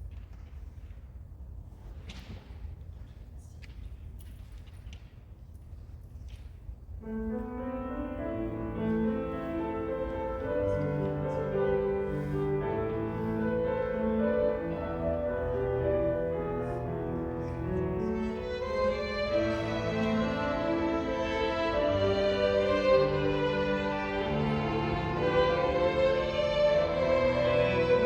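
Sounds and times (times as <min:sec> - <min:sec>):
violins and piano slow piece: 0:07.0 - 0:28.0.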